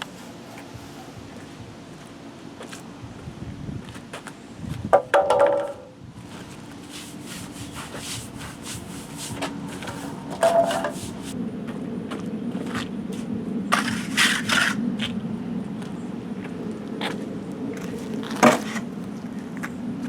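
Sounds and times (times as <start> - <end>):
trowel scraping wet cement: 6.7 - 11.4, 13.7 - 14.8, 18.2 - 18.9.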